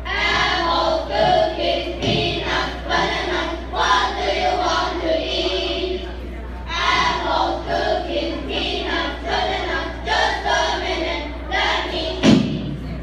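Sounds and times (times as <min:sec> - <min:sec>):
children singing in unison: 0:00.0 - 0:12.6
steady low hum: 0:00.0 - 0:13.0
loud thump: 0:01.2 - 0:02.5, 0:12.1 - 0:12.9.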